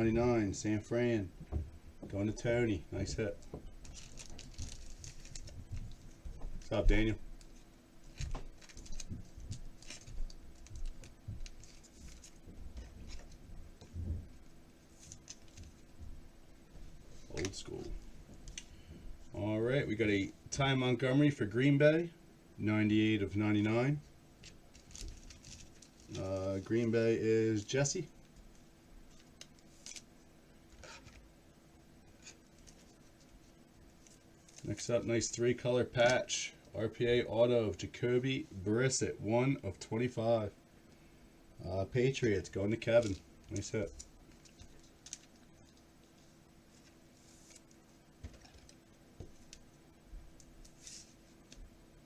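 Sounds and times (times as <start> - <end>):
faint steady hum: 0.0 - 52.0
trading cards rustling: 3.8 - 7.1, 42.2 - 49.6.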